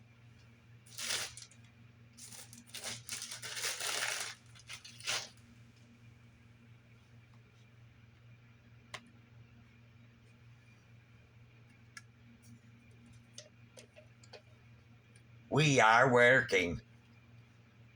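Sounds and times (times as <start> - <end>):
steady low hum: 0.0 - 17.9
rustling and clattering handling: 2.2 - 5.3.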